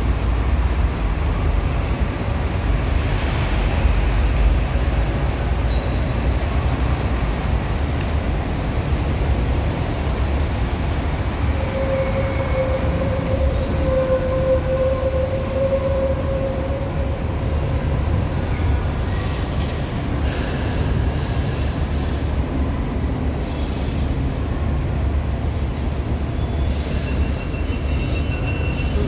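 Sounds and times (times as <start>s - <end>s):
tram low rumble and hum: 0.0s - 29.0s.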